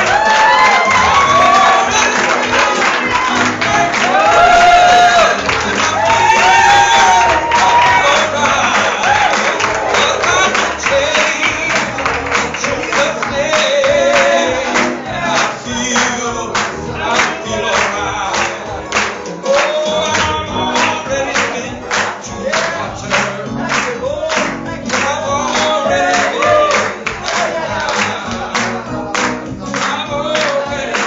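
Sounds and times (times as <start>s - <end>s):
choir singing gospel: 0.0s - 31.0s.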